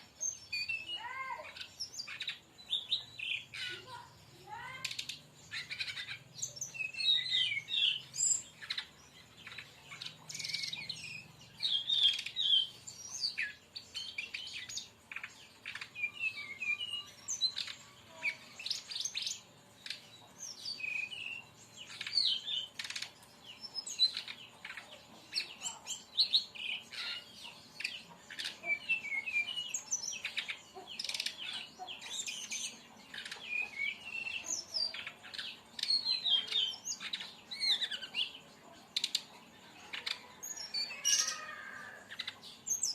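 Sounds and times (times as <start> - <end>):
bird singing chirps and trills: 0.0 - 42.9
sharp clicking bird notes: 4.7 - 5.2, 21.9 - 23.2.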